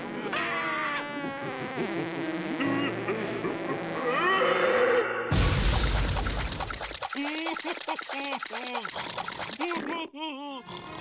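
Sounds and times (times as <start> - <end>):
cartoon low boom: 5.3 - 6.9.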